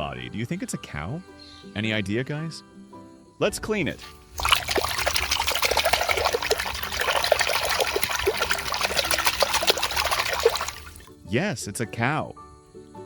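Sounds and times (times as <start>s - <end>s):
water dripping: 4.0s - 11.1s
water running and splashing: 4.0s - 11.1s.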